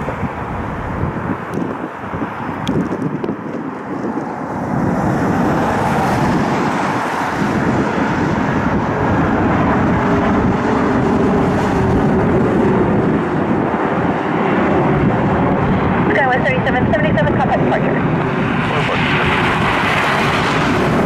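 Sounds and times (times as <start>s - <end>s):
jet engines roaring: 0.0s - 21.0s.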